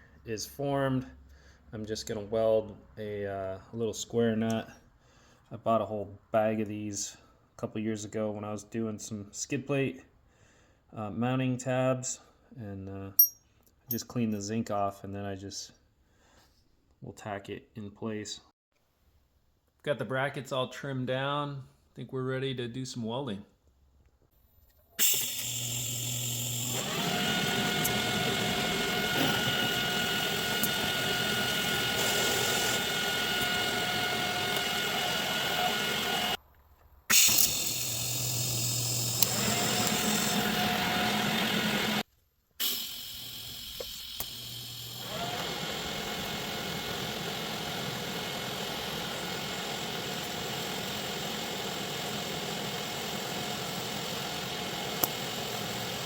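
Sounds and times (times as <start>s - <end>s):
machine whine: 25.0s - 36.4s, 37.1s - 42.0s, 42.6s - 56.0s
welding arc hiss: 37.2s - 41.0s, 45.9s - 56.0s.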